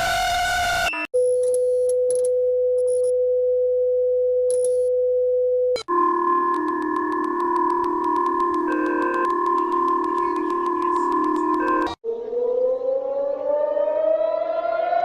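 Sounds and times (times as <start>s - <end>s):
steady electronic tone: 5.8s - 12.0s
synthesized chord: 5.9s - 12.0s
siren: 5.9s - 15.0s
fast regular ticking: 6.1s - 12.0s.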